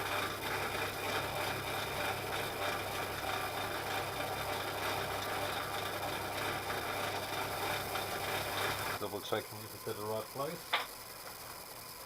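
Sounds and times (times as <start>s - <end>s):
milling machine running: 0.0s - 12.0s.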